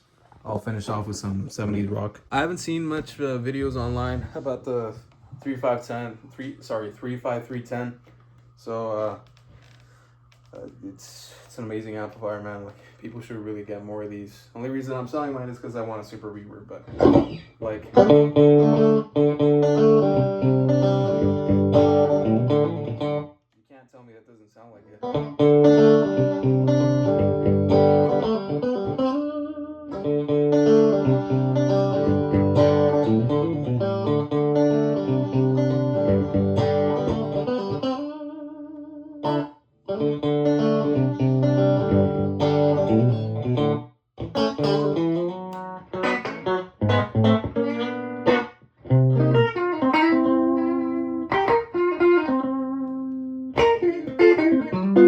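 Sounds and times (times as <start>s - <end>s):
electric guitar playing rock chords: 17.0s - 23.2s, 25.0s - 55.0s.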